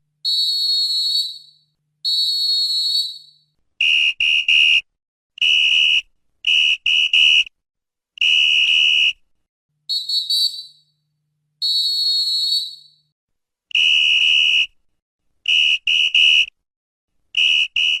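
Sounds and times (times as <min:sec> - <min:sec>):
referee's whistle blasts: 0:00.3 - 0:04.8, 0:09.9 - 0:10.8, 0:11.6 - 0:13.1, 0:17.4 - 0:18.0.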